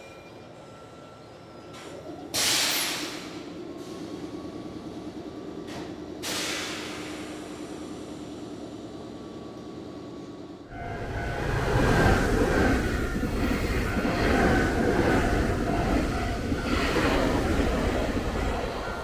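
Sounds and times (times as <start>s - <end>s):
electric train running: 10.7s - 19.0s.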